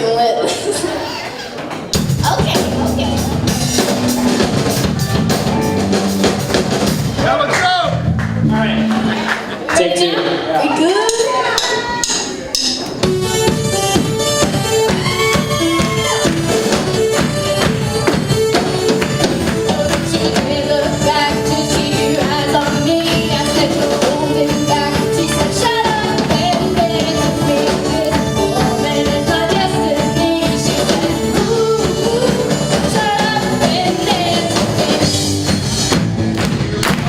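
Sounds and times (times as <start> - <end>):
live rock band: 0.8 - 9.7, 11.1 - 37.0
guitar: 1.1 - 9.8, 11.1 - 37.0
drum kit beat: 1.8 - 9.6, 11.0 - 37.0
person singing: 18.4 - 35.4.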